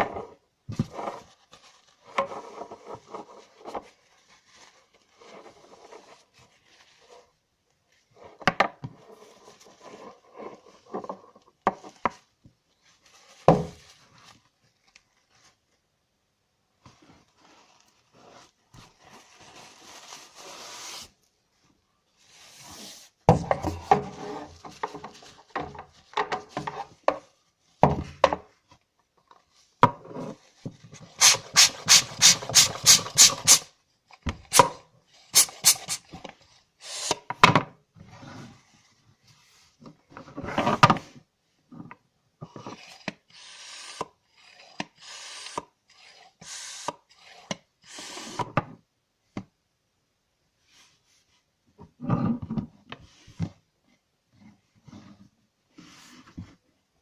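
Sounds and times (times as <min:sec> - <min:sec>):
sharp pump strokes: 0:31.2 - 0:33.7, 0:35.3 - 0:36.1, 0:36.8 - 0:37.2, 0:43.4 - 0:48.4
pump rubbing and scraping: 0:35.4 - 0:36.1.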